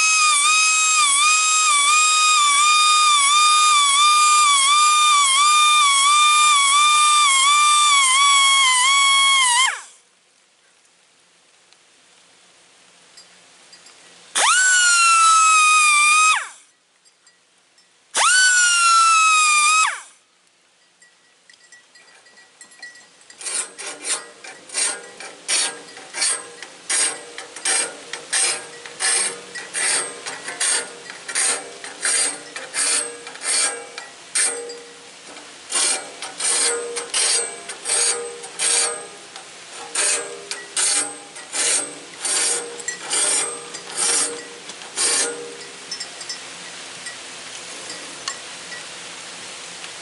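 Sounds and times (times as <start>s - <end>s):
metal file rasping on saw blade: 23.3s - 34.8s, 35.7s - 45.6s.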